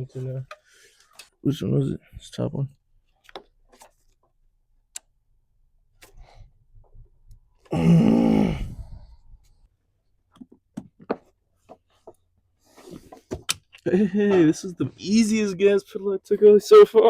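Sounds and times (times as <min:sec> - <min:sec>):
person sighing with effort: 0:07.6 - 0:09.3.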